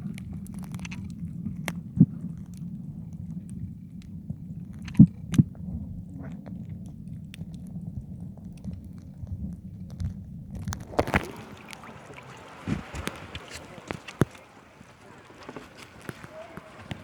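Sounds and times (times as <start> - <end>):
underwater low rumble: 0.0 - 17.0
rustling splash: 10.6 - 17.0.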